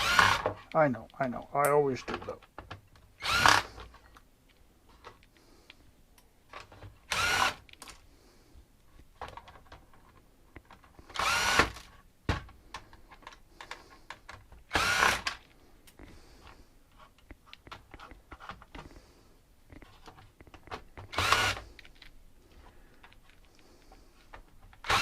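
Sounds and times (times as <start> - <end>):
power drill whining: 0.0 - 0.6, 3.2 - 3.9, 7.1 - 7.8, 11.0 - 11.8, 14.7 - 15.4, 21.0 - 21.8, 24.8 - 25.0.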